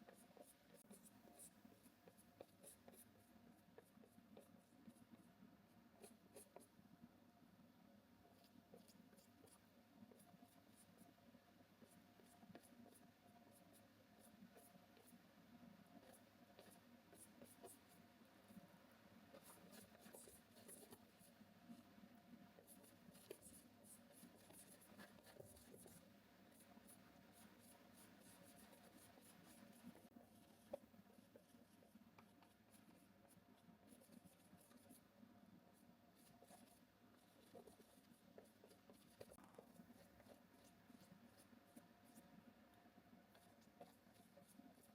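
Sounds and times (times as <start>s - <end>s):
paintbrush scratching on canvas: 0.0s - 5.3s, 5.9s - 6.7s, 15.8s - 18.7s, 19.3s - 42.4s, 43.3s - 44.9s
low room hum: 0.0s - 44.9s.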